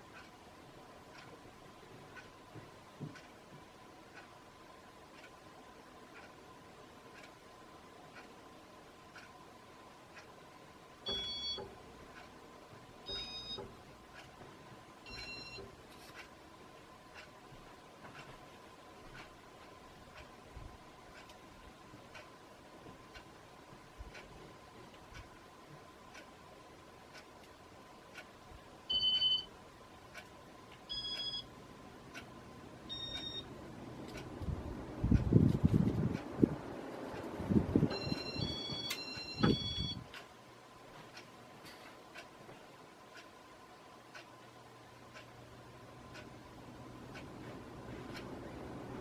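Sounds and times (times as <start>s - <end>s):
faint steady hum: 0.0s - 49.0s
faint ticking: 0.0s - 49.0s
electronic control beeping: 30.9s - 31.5s, 32.9s - 33.5s, 37.9s - 40.0s.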